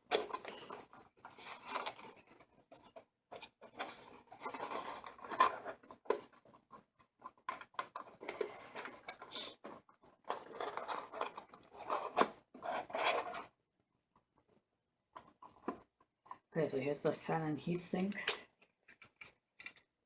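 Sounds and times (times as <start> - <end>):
cardboard and plastic packaging rustling: 0.0 - 13.6.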